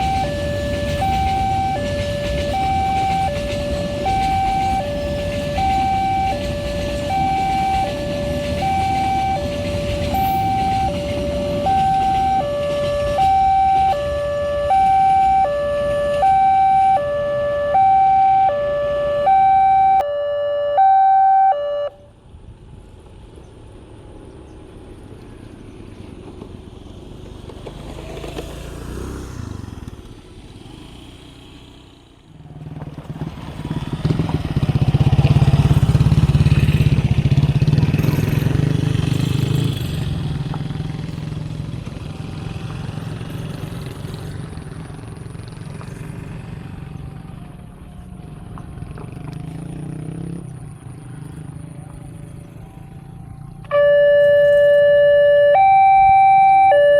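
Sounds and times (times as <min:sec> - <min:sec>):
two-tone crossing alarm siren: 0:00.0 - 0:22.1, 0:52.5 - 0:56.9
vehicle engine: 0:00.0 - 0:56.9.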